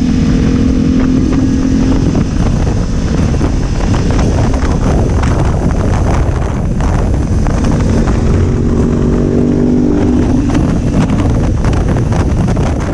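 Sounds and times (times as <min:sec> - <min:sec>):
motorcycle engine running: 0:00.0 - 0:12.9
wind rush on microphone: 0:00.0 - 0:12.9.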